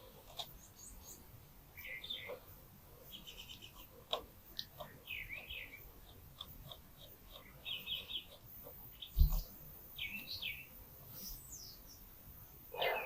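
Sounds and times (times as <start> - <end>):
small birds chirping and trilling: 0.0 - 13.0
low thump: 9.2 - 9.4.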